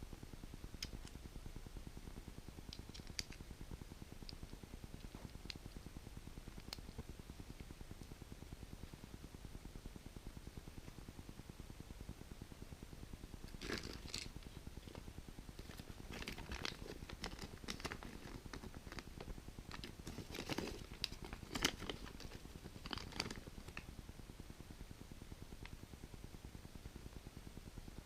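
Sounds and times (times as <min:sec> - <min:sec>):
small sharp clicks: 0:00.8 - 0:01.2
wrappers crinkling and tearing: 0:15.7 - 0:19.0, 0:19.7 - 0:23.4.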